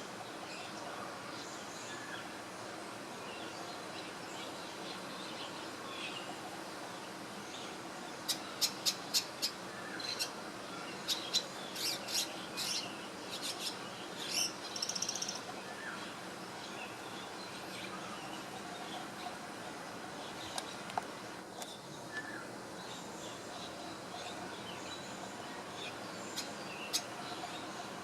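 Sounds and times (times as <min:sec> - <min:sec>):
background hiss: 0:00.0 - 0:28.0
small bird chirping: 0:11.0 - 0:15.5.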